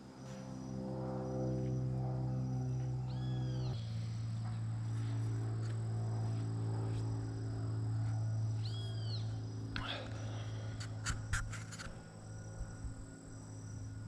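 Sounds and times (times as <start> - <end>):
low droning tone: 0.0 - 14.0.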